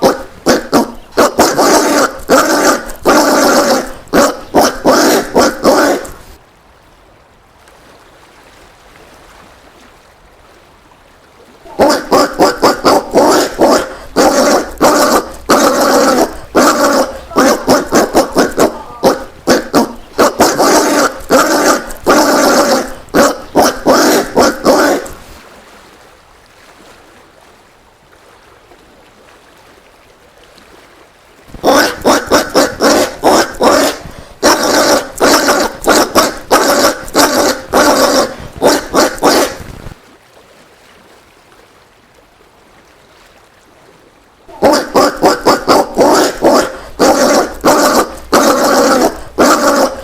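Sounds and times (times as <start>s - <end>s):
peccary harsh calls: 0.0s - 6.4s, 11.7s - 25.3s, 31.5s - 39.7s, 44.5s - 50.0s.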